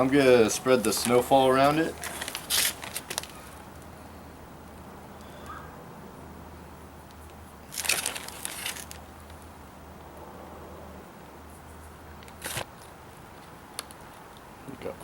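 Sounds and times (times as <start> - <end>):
package crinkling and rustling: 0.8 - 3.6, 7.7 - 9.0, 12.3 - 12.7.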